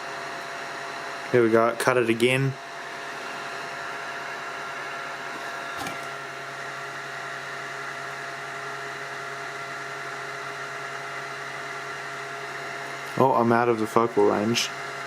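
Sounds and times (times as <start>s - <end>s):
small fan whirring: 0.0s - 15.0s.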